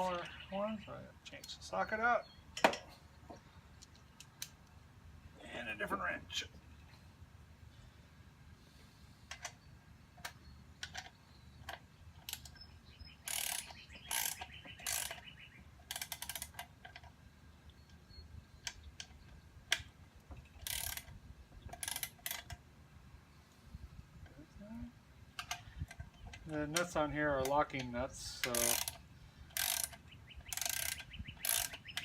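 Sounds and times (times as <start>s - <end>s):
ratchet wrench clicking: 13.2s - 15.2s, 15.8s - 16.7s, 20.6s - 21.1s, 21.7s - 22.6s, 27.4s - 32.0s.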